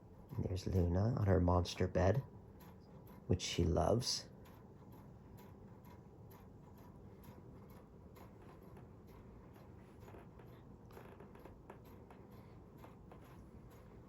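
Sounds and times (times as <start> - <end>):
soft irregular clicks: 0.0 - 14.0.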